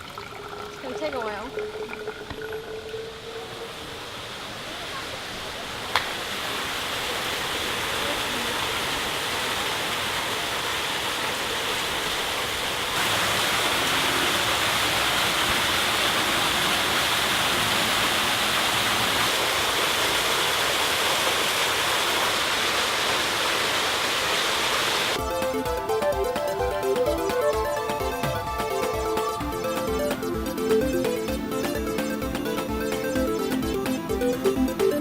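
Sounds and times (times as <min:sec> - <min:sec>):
falling water rushing: 0:00.0 - 0:35.0.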